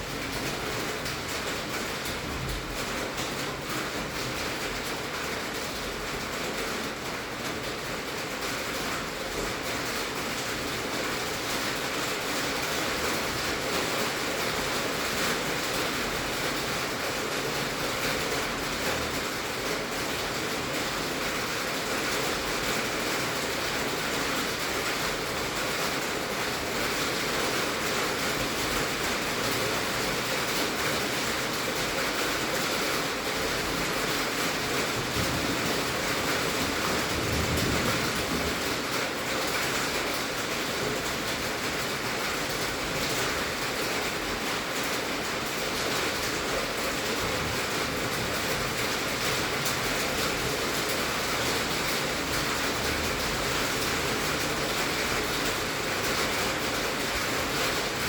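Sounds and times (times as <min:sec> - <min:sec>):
heavy rain on a tin roof: 0:00.0 - 0:58.0.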